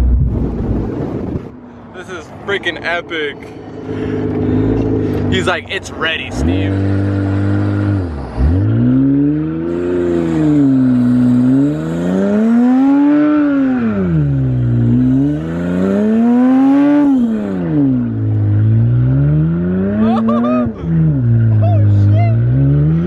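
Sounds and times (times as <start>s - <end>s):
car engine revving hard: 3.7s - 23.0s.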